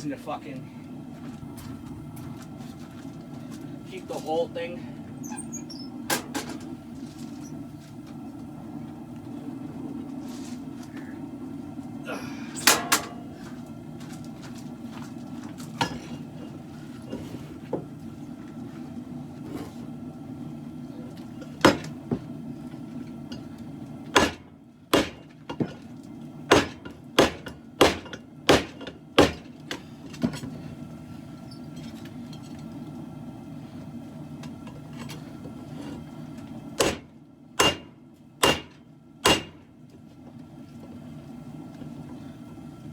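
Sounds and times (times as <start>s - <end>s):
steady low hum: 0.0s - 42.9s
hammer striking steel on anvil: 12.6s - 13.3s, 26.5s - 29.4s, 36.8s - 39.6s.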